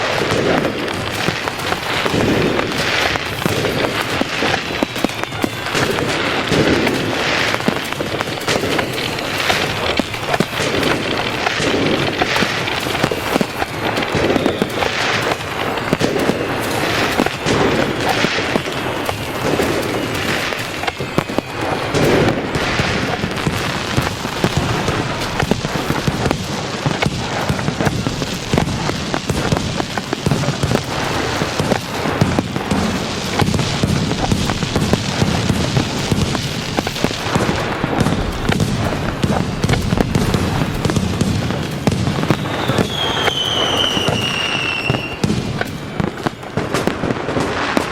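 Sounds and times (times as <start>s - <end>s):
fireworks bangs and crackling: 0.0s - 47.9s
whistling shells falling in pitch: 1.2s - 26.1s, 42.2s - 45.2s.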